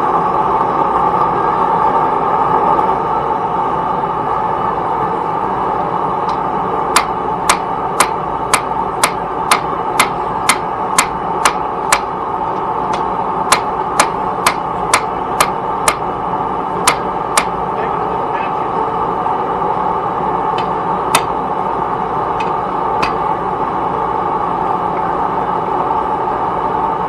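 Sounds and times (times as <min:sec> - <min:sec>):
hammer blows on metal: 0:06.3 - 0:12.1, 0:12.9 - 0:16.1, 0:16.8 - 0:17.6.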